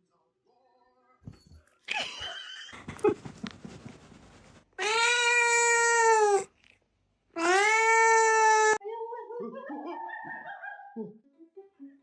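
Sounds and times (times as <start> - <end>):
cat meowing: 4.8 - 6.5, 7.4 - 8.8.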